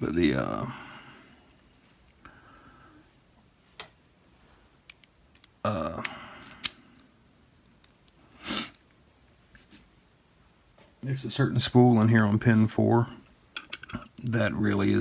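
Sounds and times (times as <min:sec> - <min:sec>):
small metal parts clicking: 0:04.9 - 0:05.5, 0:06.4 - 0:06.8.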